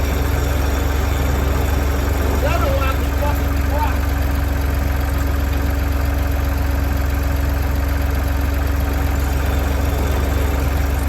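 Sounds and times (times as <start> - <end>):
engine running with deep rumble: 0.0 - 11.0.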